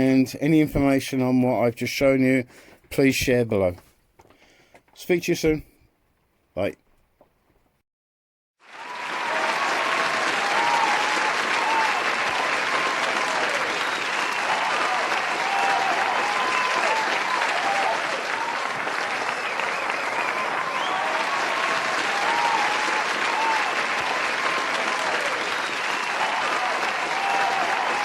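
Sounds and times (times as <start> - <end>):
crowd applauding: 8.6 - 28.0
crowd cheering: 8.6 - 28.0.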